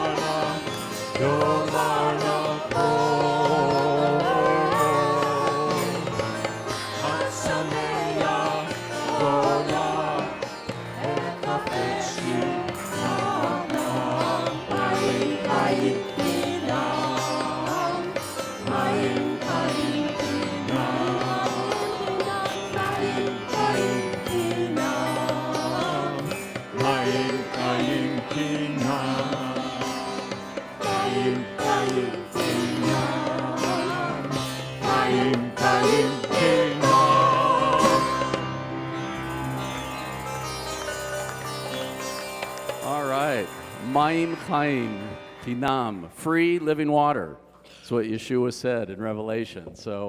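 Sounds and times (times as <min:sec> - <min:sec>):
live band playing: 0:34.9 - 0:45.2.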